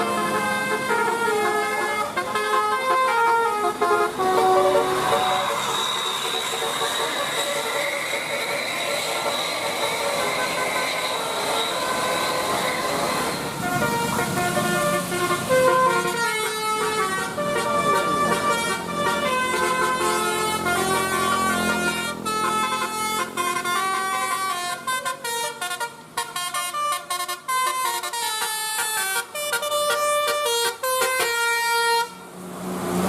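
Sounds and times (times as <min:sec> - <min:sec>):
multi-tone musical bus horn: 0:00.0 - 0:32.3.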